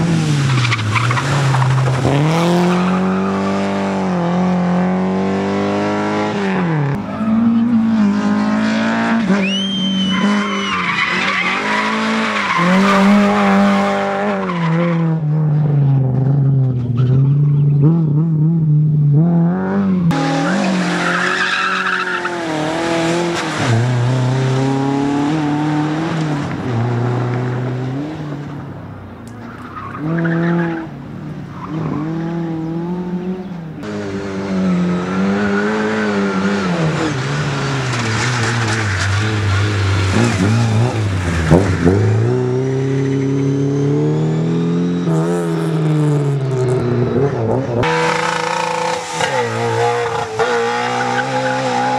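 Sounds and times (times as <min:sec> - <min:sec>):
rally car engines revving: 0:00.0 - 0:51.9
tyre squeal and skidding: 0:00.2 - 0:03.9, 0:09.3 - 0:13.4, 0:16.8 - 0:17.8, 0:20.1 - 0:24.1, 0:29.3 - 0:30.9, 0:31.5 - 0:32.3, 0:34.5 - 0:45.2, 0:46.5 - 0:51.9.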